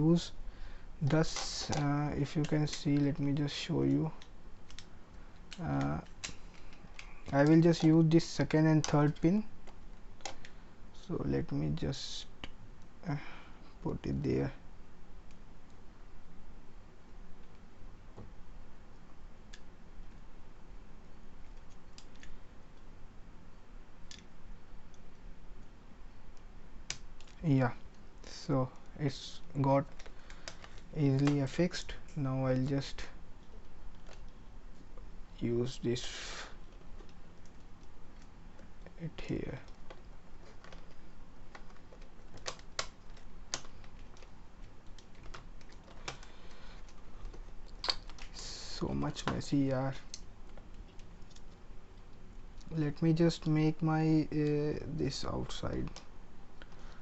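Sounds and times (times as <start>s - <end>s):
steady low hum: 0.0s - 57.0s
plastic connectors clicking: 29.8s - 31.6s, 39.6s - 48.4s.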